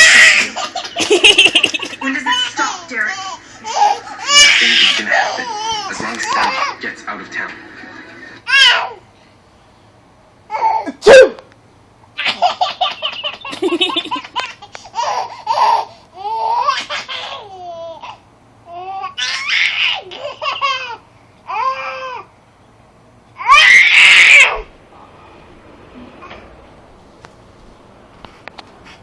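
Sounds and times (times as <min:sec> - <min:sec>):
baby laughing: 0:00.0 - 0:06.8, 0:12.2 - 0:22.2
woman sneezing: 0:10.9 - 0:11.4.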